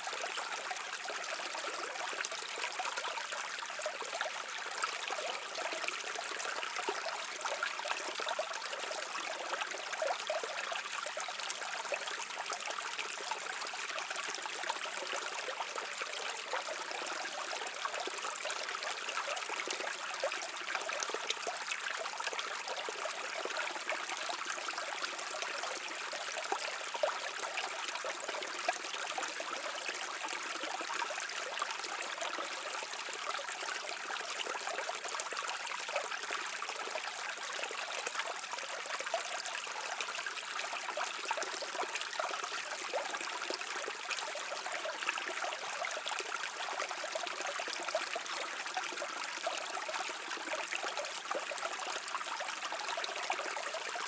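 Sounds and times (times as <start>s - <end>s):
stream trickling over rocks: 0.0s - 54.0s.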